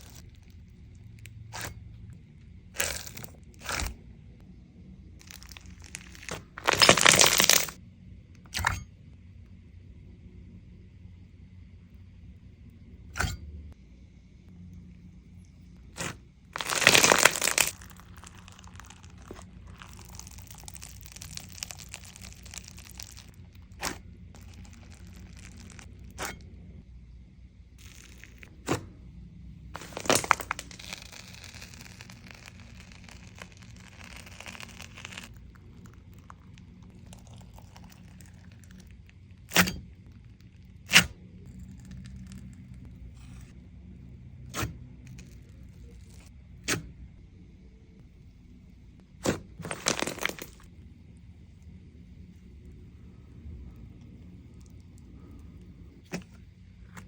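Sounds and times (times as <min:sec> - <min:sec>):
soft crinkling: 0:00.0 - 0:01.7, 0:05.2 - 0:07.8, 0:15.9 - 0:26.2, 0:27.8 - 0:28.6, 0:29.7 - 0:40.8, 0:48.5 - 0:57.0
slime popping and crackling: 0:05.2 - 0:07.8, 0:16.0 - 0:26.2, 0:29.8 - 0:39.8, 0:49.2 - 0:50.7.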